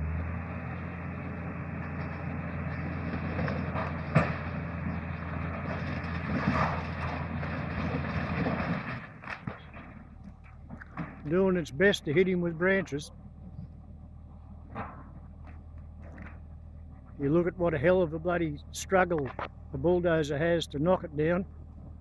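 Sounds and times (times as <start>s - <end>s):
bulldozer diesel engine droning: 0.0s - 22.0s
sharp crack: 3.2s - 11.6s.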